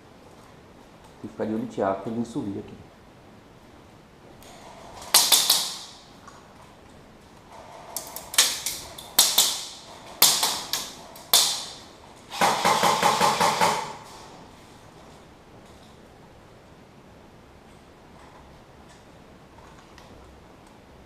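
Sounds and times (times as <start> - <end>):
airsoft guns firing: 4.4 - 6.1, 7.5 - 14.2.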